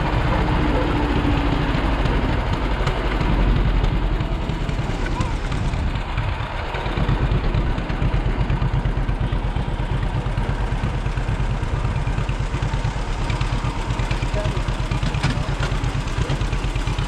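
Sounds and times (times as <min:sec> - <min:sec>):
engine running with low throb: 0:00.0 - 0:17.0.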